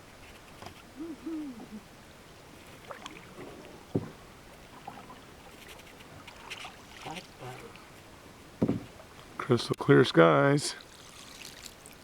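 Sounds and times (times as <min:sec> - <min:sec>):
low hoots: 0:01.0 - 0:01.9.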